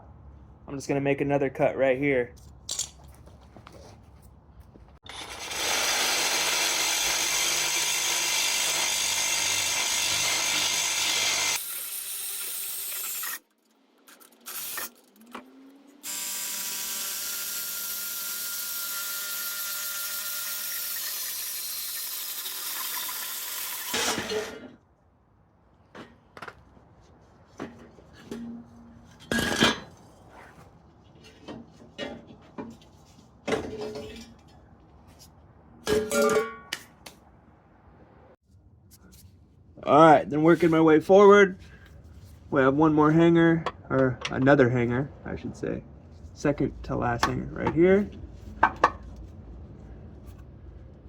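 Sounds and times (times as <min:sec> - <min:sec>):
power tool cutting pipe: 0:05.1 - 0:13.4, 0:16.0 - 0:24.6.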